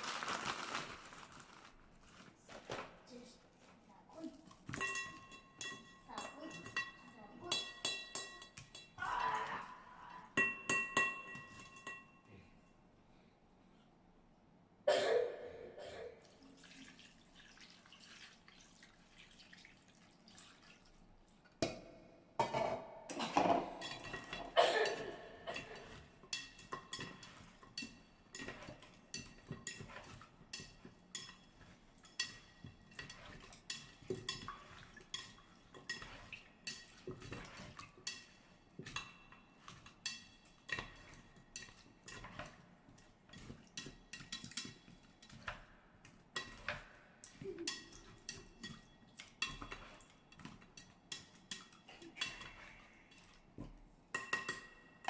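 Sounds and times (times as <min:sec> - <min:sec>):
pots and dishes knocking: 0:04.6 - 0:09.0, 0:10.4 - 0:12.2, 0:21.6 - 0:42.4, 0:43.3 - 0:45.7, 0:46.4 - 0:52.6, 0:53.6 - 0:55.0.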